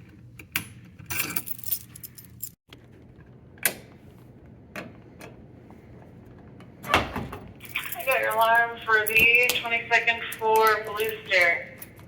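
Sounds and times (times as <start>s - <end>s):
metallic clicks and jangles: 1.1s - 2.6s, 7.6s - 9.6s.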